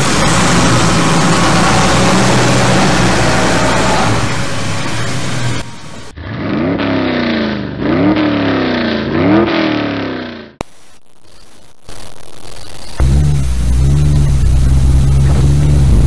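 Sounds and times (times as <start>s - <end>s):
heavy truck engine running rough: 0.0s - 6.2s, 13.0s - 16.0s
sports car engine revving: 0.0s - 10.6s, 13.0s - 16.0s.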